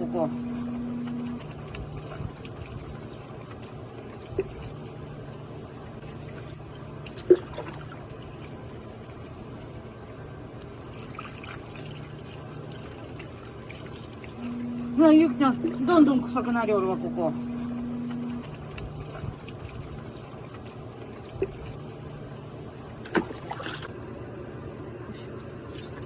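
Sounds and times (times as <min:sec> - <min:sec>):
water running and trickling: 0:00.0 - 0:23.9.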